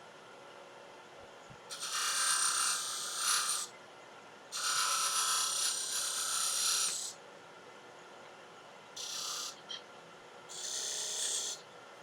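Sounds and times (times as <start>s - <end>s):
scraper cutting wood on a lathe: 1.7s - 3.7s, 4.6s - 7.1s.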